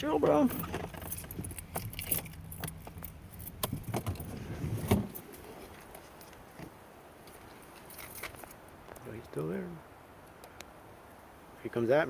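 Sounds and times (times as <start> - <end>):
car low hum: 0.0 - 11.8
car keys jangling: 0.3 - 5.4, 7.8 - 8.6.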